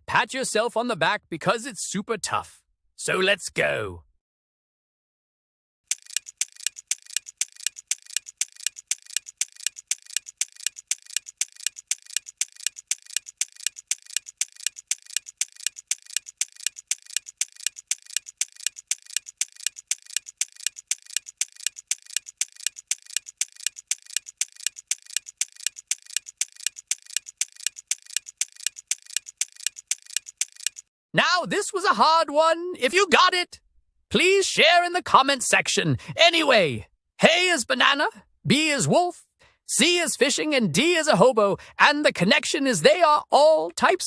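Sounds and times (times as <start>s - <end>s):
clock ticking: 5.9s - 30.8s.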